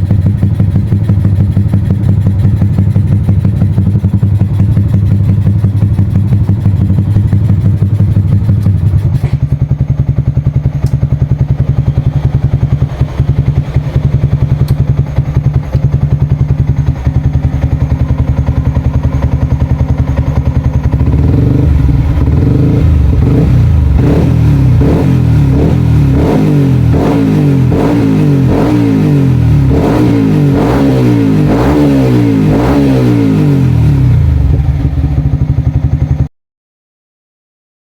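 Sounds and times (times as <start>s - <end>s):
motorcycle engine idling and revving: 0.0s - 36.3s.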